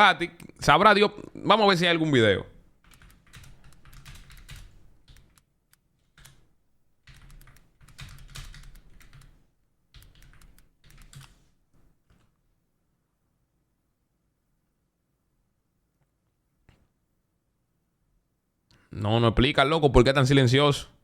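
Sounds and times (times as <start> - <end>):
typing on computer keyboard: 2.8 - 11.5.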